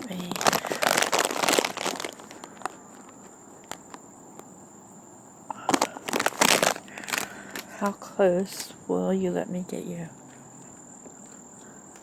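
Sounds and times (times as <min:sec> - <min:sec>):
loud rustling crunches: 0:00.0 - 0:04.2, 0:05.5 - 0:07.8
crickets trilling: 0:00.0 - 0:12.0.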